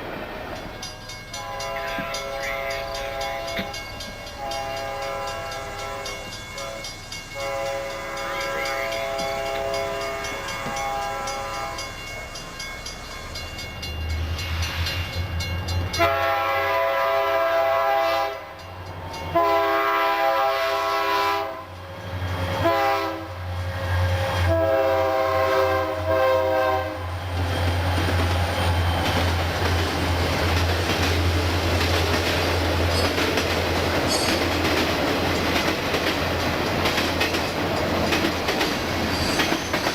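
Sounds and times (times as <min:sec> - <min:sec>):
locomotive air horn blasts: 0:01.4 - 0:03.8, 0:04.4 - 0:11.9, 0:16.0 - 0:18.6, 0:19.3 - 0:21.8, 0:22.6 - 0:23.4, 0:24.3 - 0:27.1
freight cars rumbling and clattering: 0:27.3 - 0:39.9.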